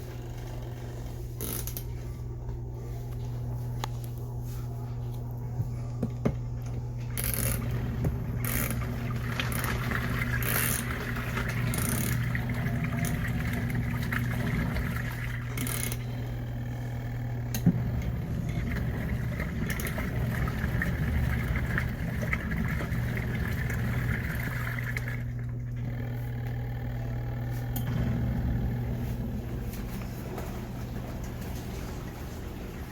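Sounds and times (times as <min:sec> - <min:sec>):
washing machine motor hum: 0:00.0 - 0:32.9
water churning: 0:07.5 - 0:16.2, 0:17.7 - 0:25.8, 0:27.9 - 0:32.9.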